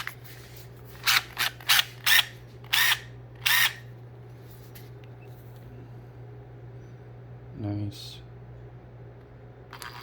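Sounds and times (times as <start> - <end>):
steady low hum: 0.0 - 10.0
impact driver motor spinning up: 1.0 - 3.8.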